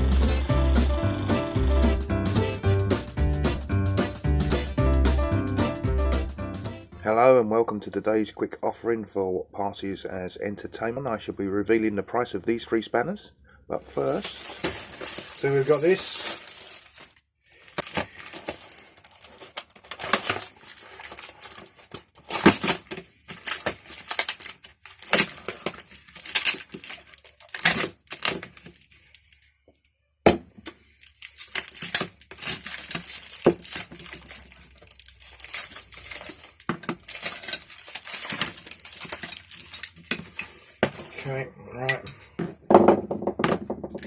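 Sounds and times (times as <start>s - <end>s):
packaging crinkling and rustling: 14.0s - 29.8s, 30.6s - 41.2s.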